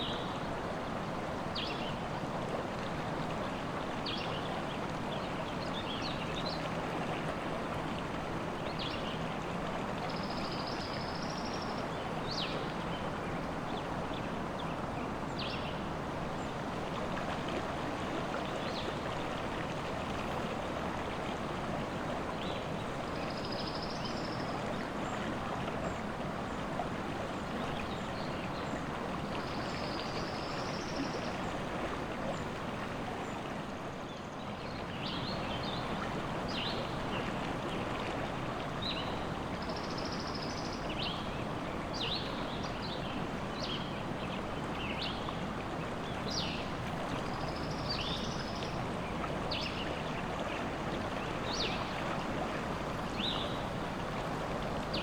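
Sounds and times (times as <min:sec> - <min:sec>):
river water rushing: 0:40.7 - 0:55.0.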